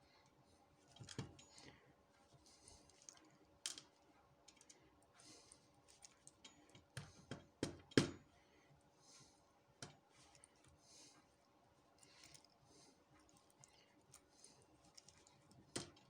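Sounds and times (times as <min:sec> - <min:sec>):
small clicks and taps of lock pins: 0:00.9 - 0:01.7, 0:05.9 - 0:08.3.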